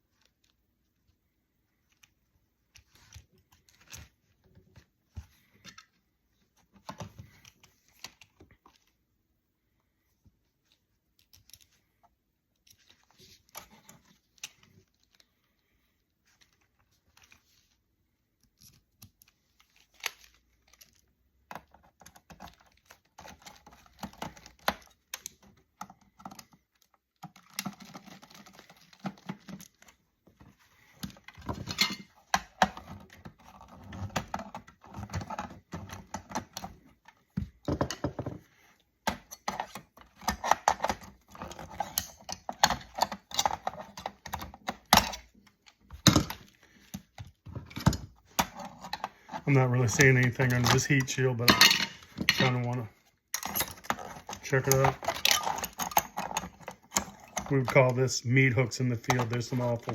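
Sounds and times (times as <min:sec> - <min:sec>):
parts clicking and rattling: 0:18.4 - 0:59.9.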